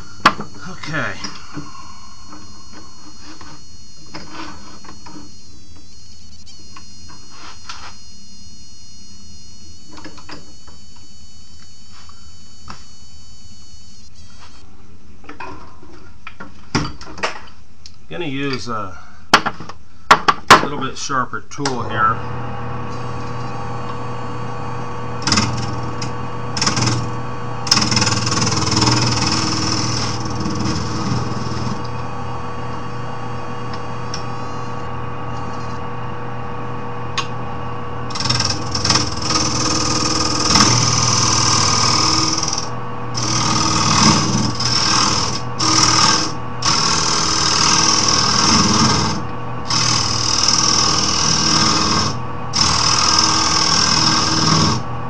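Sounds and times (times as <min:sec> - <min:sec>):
wood lathe motor running: 0:00.0 - 0:14.0, 0:22.2 - 0:35.8, 0:38.1 - 0:55.0
turning tool scraping wood: 0:02.2 - 0:13.7, 0:38.1 - 0:54.8.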